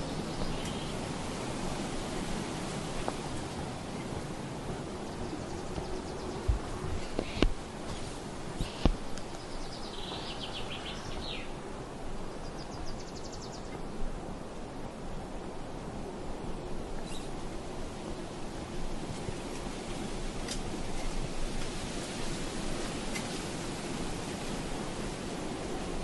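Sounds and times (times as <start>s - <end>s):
steady rushing noise: 0.0s - 12.8s.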